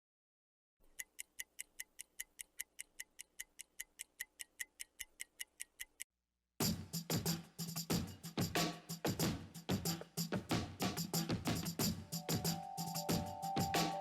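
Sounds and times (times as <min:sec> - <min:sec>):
clock ticking: 0:00.8 - 0:06.1.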